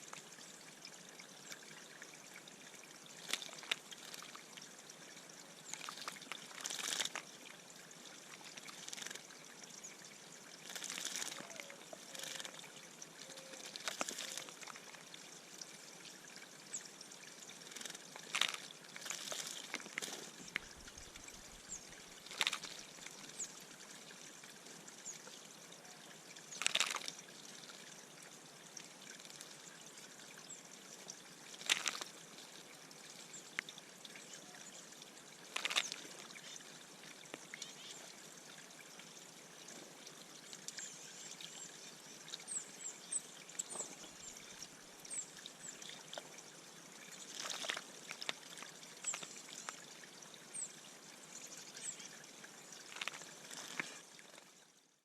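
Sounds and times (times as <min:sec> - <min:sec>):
water trickling: 0:00.0 - 0:55.0
birds splashing in water: 0:03.1 - 0:04.5, 0:05.6 - 0:09.7, 0:10.4 - 0:15.3, 0:17.3 - 0:24.1, 0:26.4 - 0:27.9, 0:31.5 - 0:32.3, 0:35.3 - 0:38.0, 0:47.1 - 0:49.9, 0:52.0 - 0:54.1.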